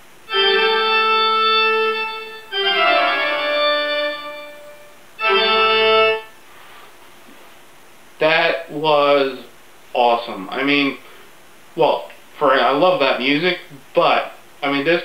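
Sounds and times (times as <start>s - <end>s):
long held music chords: 0.0s - 6.8s.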